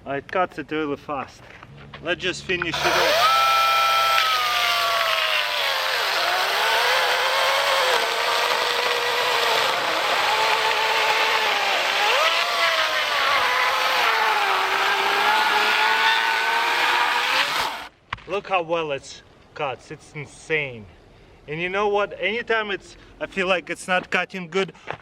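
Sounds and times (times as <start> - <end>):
chainsaw cutting through log: 2.6 - 17.9.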